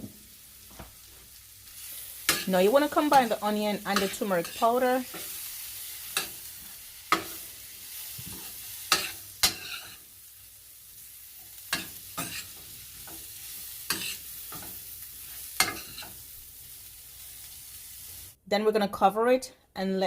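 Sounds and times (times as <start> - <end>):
onions sizzling in oil: 0.0 - 18.4
utensil scraping a pan: 8.0 - 10.0, 11.7 - 13.3, 13.9 - 16.2.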